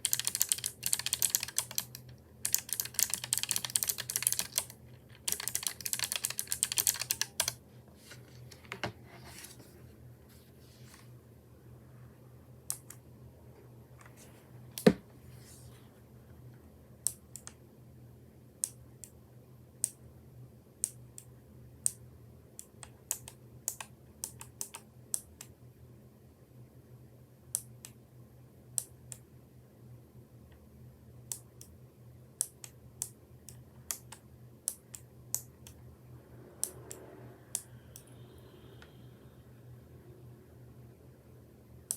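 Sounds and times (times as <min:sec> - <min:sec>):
mechanical keyboard clicks: 0:00.0 - 0:07.6.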